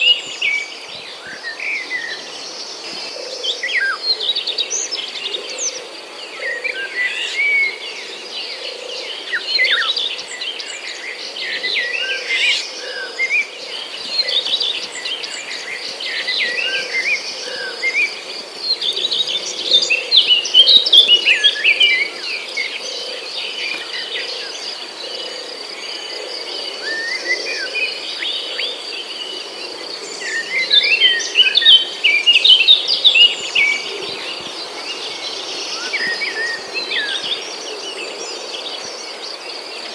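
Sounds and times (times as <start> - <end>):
birds chirping: 0.0 - 39.9
high insect drone: 0.0 - 39.9.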